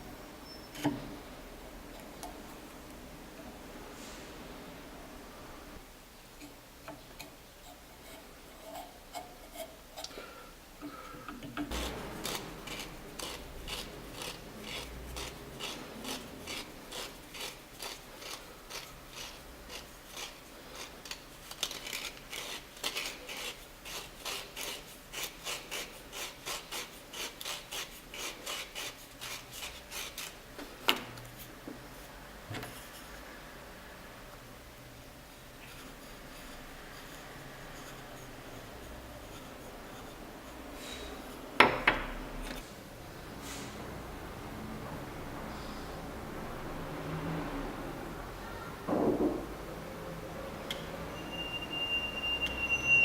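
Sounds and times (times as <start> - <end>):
sanding wood by hand: 11.7 - 20.9.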